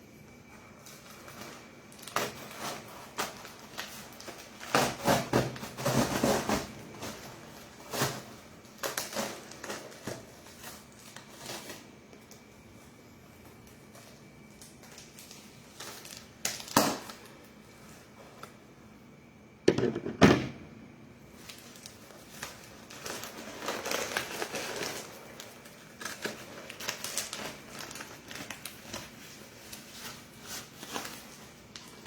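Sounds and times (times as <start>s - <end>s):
packaging crinkling and rustling: 0.4s - 18.6s, 21.3s - 32.0s
sharp knocks on package: 19.7s - 20.6s.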